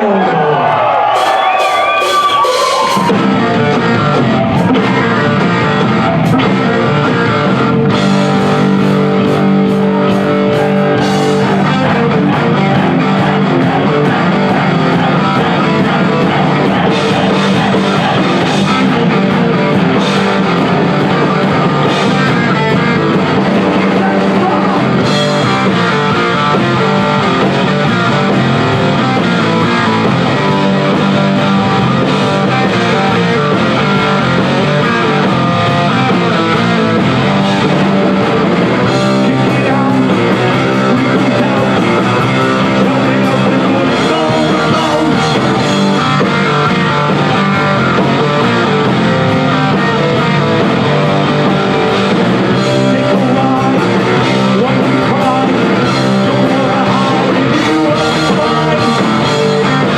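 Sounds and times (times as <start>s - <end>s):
heavy metal band playing live: 0.0s - 59.9s.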